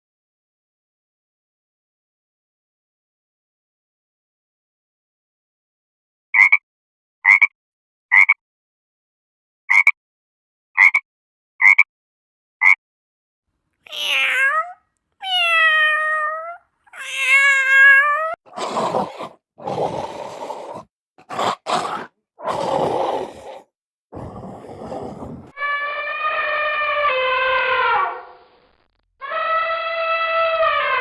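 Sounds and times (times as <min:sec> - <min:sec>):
cat meowing: 0:13.8 - 0:18.4
rough noisy animal sounds: 0:18.5 - 0:28.1.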